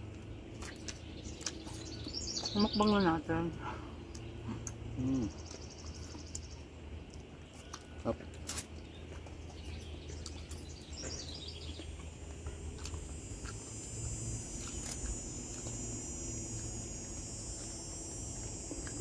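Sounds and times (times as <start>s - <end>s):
low steady rumble: 0.0s - 19.0s
high-pitched buzz: 11.1s - 19.0s.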